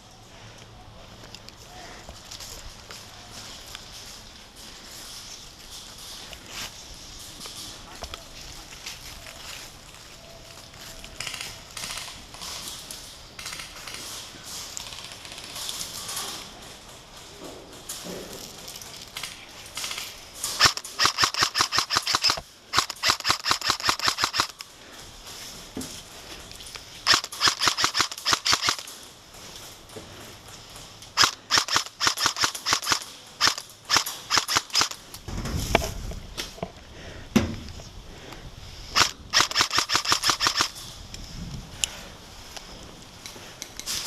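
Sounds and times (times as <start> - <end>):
airsoft guns firing bursts: 19.8 - 24.6, 27.0 - 28.9, 31.2 - 35.0, 39.0 - 40.8.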